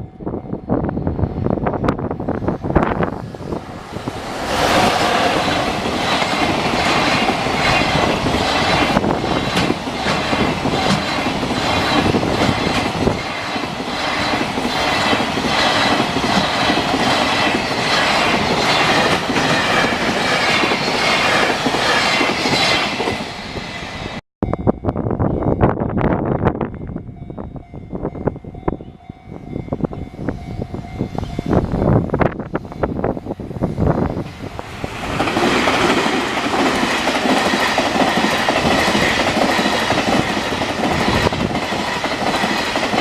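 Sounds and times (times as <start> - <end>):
train wheels clattering: 4.0 - 23.4, 34.8 - 43.0.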